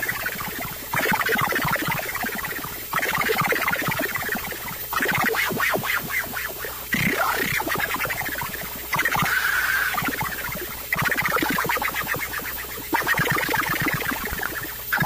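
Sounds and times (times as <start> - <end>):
whistling synthesizer tone: 0.0 - 6.5, 7.1 - 15.0.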